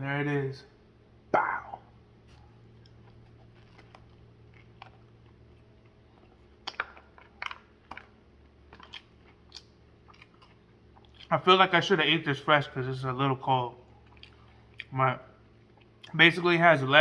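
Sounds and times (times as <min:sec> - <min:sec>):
chewing mouth sounds: 0:01.7 - 0:11.3, 0:13.8 - 0:15.0.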